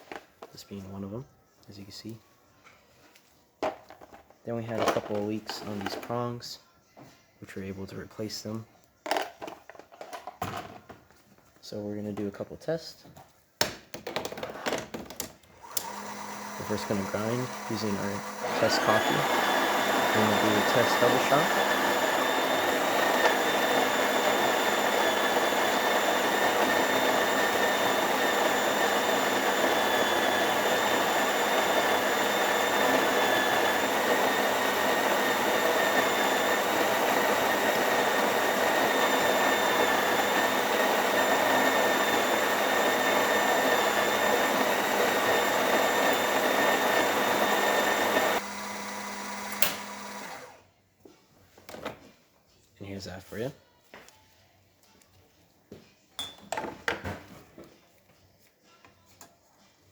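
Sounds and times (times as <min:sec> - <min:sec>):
electric coffee grinder running: 0:15.6 - 0:50.6.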